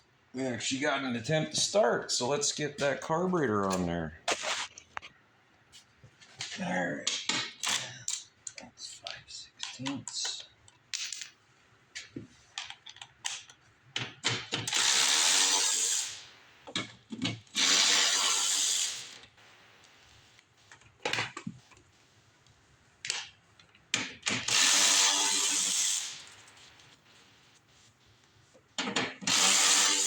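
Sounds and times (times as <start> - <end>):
power drill spinning fasteners: 14.6 - 16.4, 17.5 - 19.4, 24.3 - 27.0, 29.2 - 30.0.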